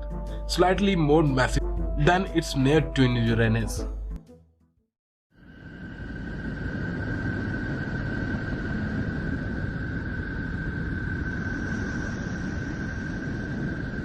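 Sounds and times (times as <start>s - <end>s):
rumbling hiss: 5.4s - 14.0s.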